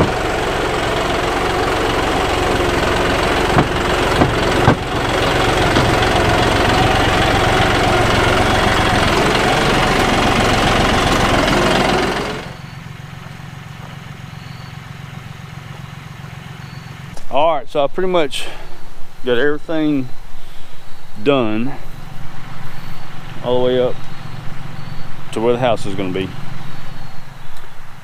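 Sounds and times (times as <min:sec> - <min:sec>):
sharp knocks: 0:00.0 - 0:00.4, 0:03.5 - 0:06.6
tractor diesel engine running: 0:00.0 - 0:28.0.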